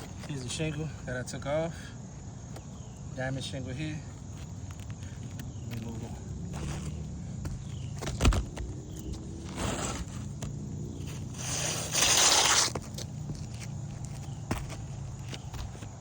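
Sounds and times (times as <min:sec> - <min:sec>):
roof shingles scraping: 0:06.5 - 0:16.0.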